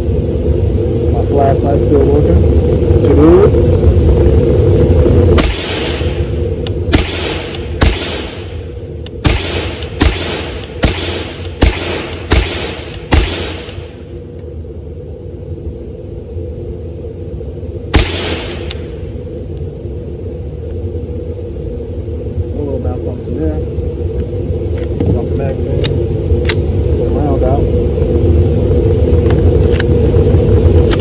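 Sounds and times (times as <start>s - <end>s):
rifle gunshots: 5.4s - 6.3s, 6.9s - 8.6s, 9.2s - 14.0s, 17.9s - 18.9s.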